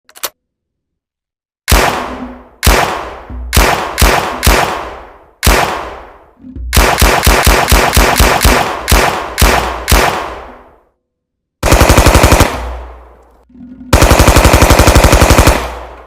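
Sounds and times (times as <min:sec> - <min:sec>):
submachine gun shots echoing: 0:01.7 - 0:06.2, 0:06.8 - 0:10.7, 0:11.6 - 0:13.1, 0:14.0 - 0:16.0.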